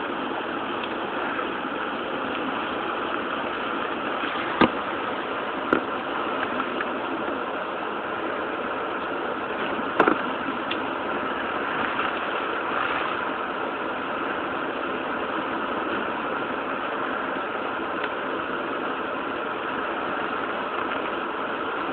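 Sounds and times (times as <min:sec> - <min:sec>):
hiss of wind and rain: 0:00.0 - 0:21.9.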